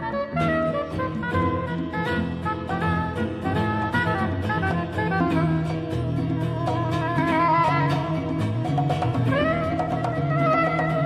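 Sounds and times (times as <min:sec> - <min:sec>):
jazz fusion band playing: 0:00.0 - 0:11.0
drum and percussion strikes: 0:07.2 - 0:11.0.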